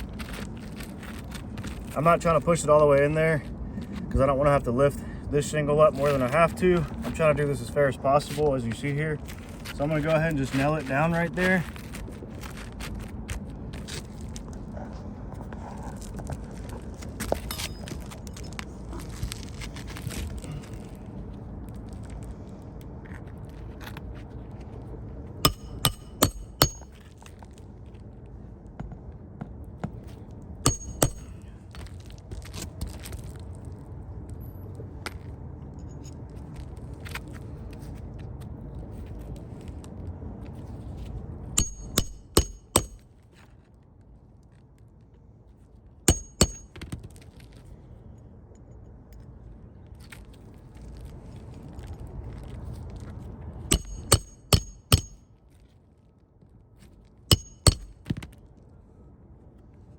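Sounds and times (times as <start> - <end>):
hammer striking roofing nails: 25.5 - 27.0, 30.7 - 31.4, 41.6 - 43.0, 46.1 - 46.9, 53.7 - 55.2, 57.3 - 58.3.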